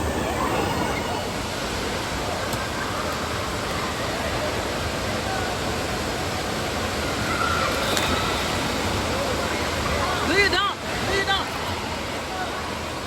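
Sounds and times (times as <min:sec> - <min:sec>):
water rushing: 0:00.0 - 0:05.1.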